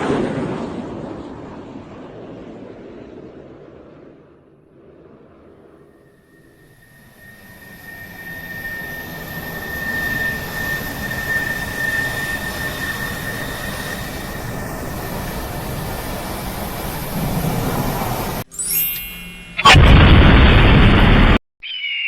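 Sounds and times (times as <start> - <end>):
jet engine noise: 0.0 - 18.5
thin high whine: 5.9 - 21.3.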